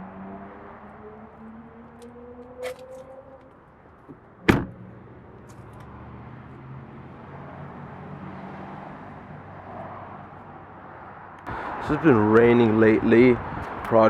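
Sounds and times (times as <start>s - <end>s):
car door slamming: 2.6s - 3.1s, 4.0s - 4.9s.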